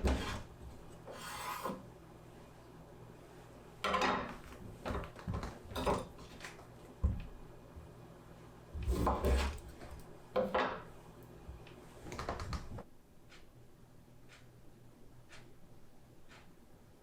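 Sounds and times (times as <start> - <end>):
dishes knocking and clattering: 3.8 - 7.3, 10.4 - 10.9.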